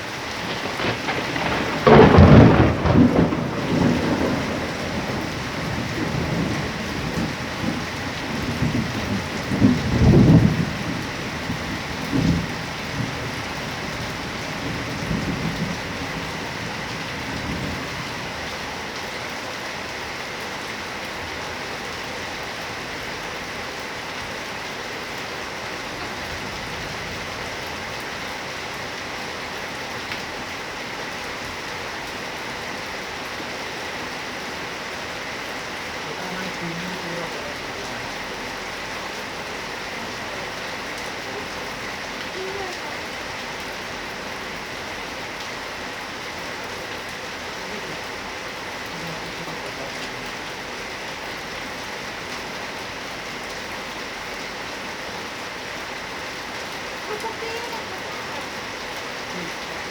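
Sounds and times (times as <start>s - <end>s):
thunder rumbling: 0.0s - 19.1s, 24.2s - 29.6s
heavy rain falling: 0.0s - 59.9s.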